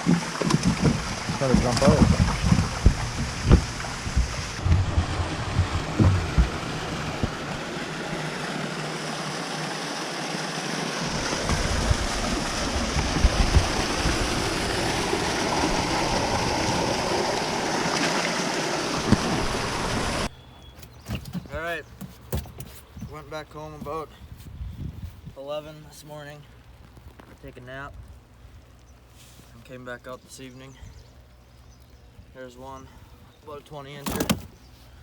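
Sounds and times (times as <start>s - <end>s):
low knocks: 0.0s - 8.2s
water and wind rushing: 0.0s - 20.3s.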